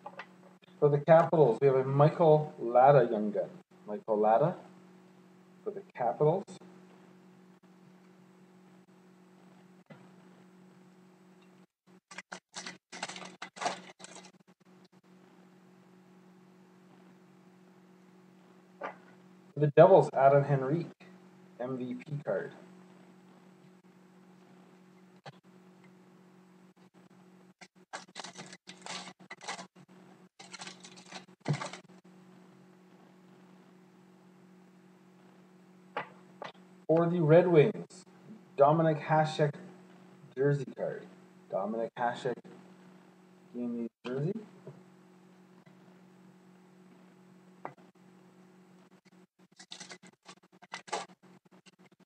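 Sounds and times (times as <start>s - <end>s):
faint electrical hum: 0.0s - 52.0s
wrapper crinkling: 12.1s - 14.4s, 27.9s - 29.7s, 30.4s - 31.9s, 49.6s - 51.1s.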